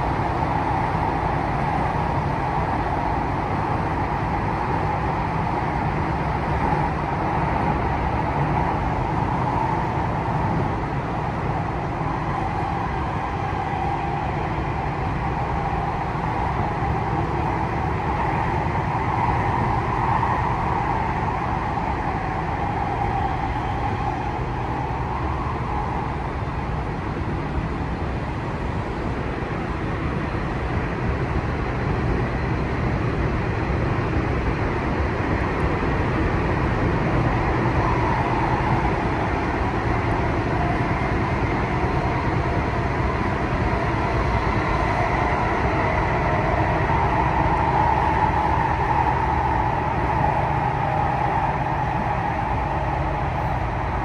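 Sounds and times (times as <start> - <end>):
train wheels rumbling on rails: 0.0 - 54.0.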